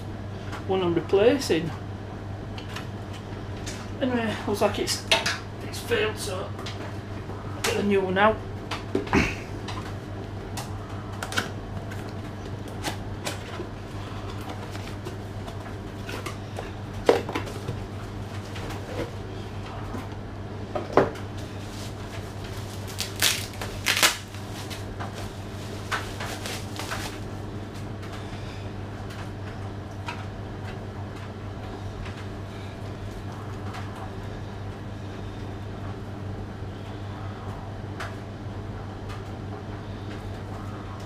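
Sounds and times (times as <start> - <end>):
steady low hum: 0.0 - 41.0
packaging rustling: 21.4 - 27.4.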